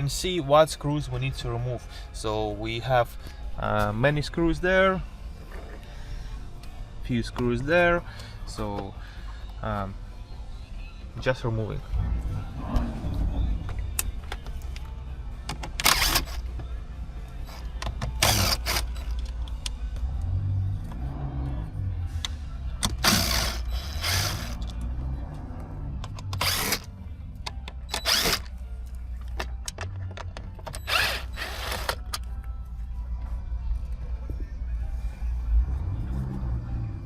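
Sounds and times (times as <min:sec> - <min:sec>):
low background music: 0:00.0 - 0:37.0
hand tool rasping on screws: 0:18.2 - 0:19.1, 0:26.4 - 0:26.9.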